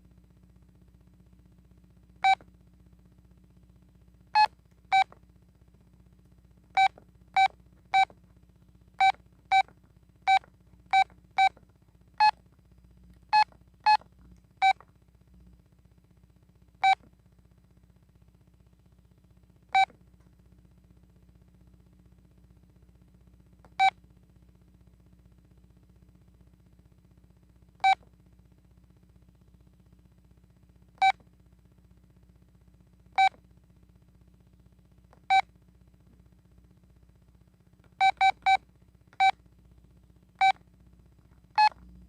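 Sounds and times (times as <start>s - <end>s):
phone keypad beeps: 4.4s - 5.0s, 38.0s - 38.6s.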